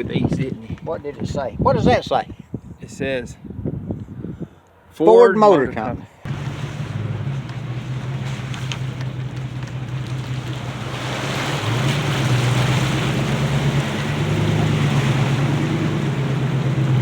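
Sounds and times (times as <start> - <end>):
road and wind noise: 0.0 - 17.0
vehicle engine drone: 6.3 - 17.0.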